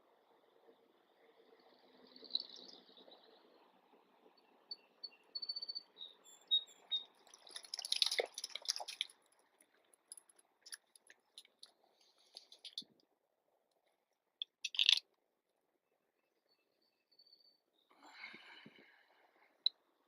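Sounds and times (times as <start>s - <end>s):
small birds chirping: 1.4s - 3.7s, 4.4s - 9.1s, 10.7s - 12.9s, 14.4s - 15.0s.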